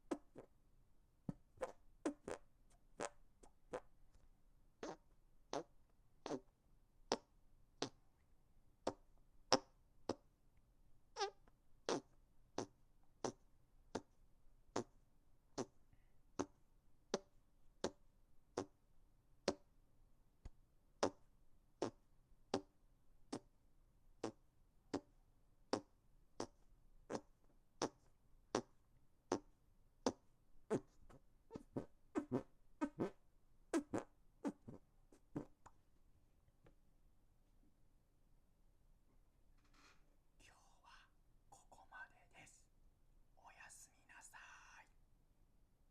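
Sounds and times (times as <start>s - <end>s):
hand fart squelches: 0.1s - 0.6s, 1.3s - 3.9s, 4.8s - 8.0s, 8.8s - 10.3s, 11.2s - 15.8s, 16.4s - 18.8s, 19.4s - 19.7s, 21.0s - 23.5s, 24.2s - 35.7s.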